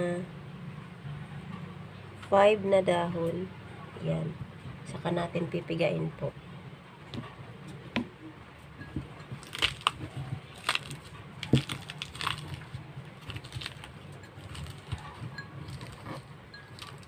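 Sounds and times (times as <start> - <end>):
leaves crushed by hand crackling: 9.3 - 17.0.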